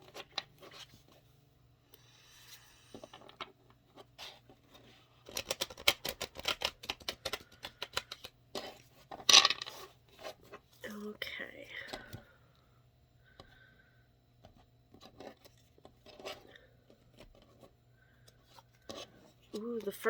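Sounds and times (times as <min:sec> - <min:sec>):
cards being shuffled: 0:02.5 - 0:10.7
cards sliding: 0:04.0 - 0:10.6.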